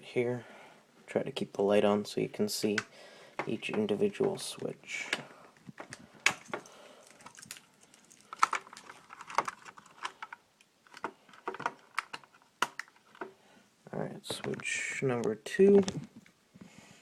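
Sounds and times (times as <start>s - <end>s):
small plastic clicks and knocks: 5.1s - 13.4s.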